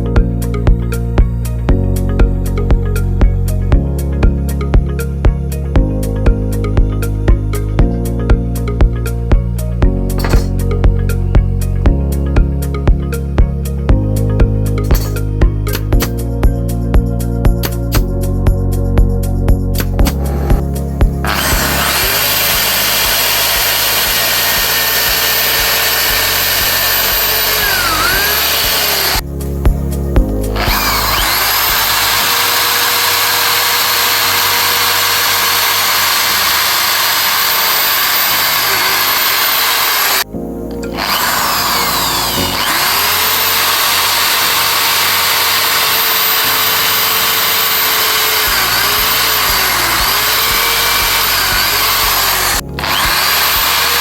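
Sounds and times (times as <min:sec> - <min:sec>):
background music with bass line: 0:00.0 - 0:54.0
power tool cutting wood: 0:10.1 - 0:10.7, 0:14.8 - 0:16.3, 0:17.6 - 0:18.1, 0:19.8 - 0:29.3, 0:30.3 - 0:54.0.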